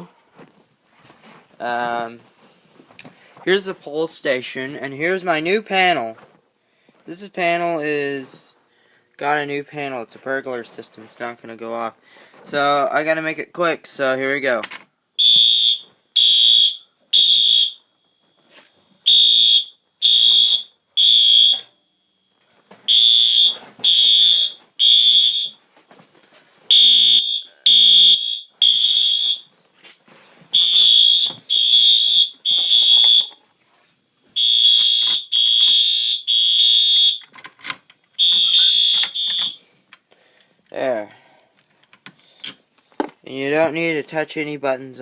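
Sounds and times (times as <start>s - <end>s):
fire alarm horn blasts: 15.2s - 18.0s, 19.0s - 22.0s, 22.9s - 25.6s, 26.7s - 29.5s, 30.5s - 33.4s, 34.4s - 37.3s, 38.2s - 39.6s.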